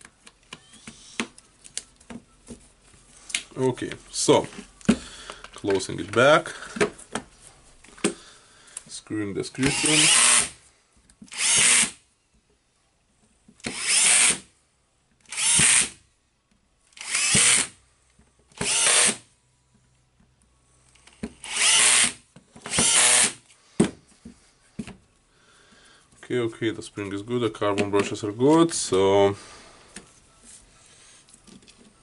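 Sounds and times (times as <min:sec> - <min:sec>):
cordless drill driving screws: 0:09.6 - 0:10.6, 0:11.3 - 0:12.0, 0:13.6 - 0:14.5, 0:15.2 - 0:16.0, 0:17.0 - 0:17.8, 0:18.6 - 0:19.3, 0:21.1 - 0:23.4.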